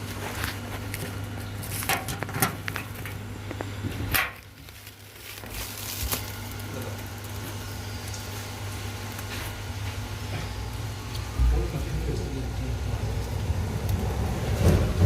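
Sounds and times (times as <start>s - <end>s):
packaging crackling and knocking: 0.0s - 7.2s
steady low hum: 0.0s - 15.0s.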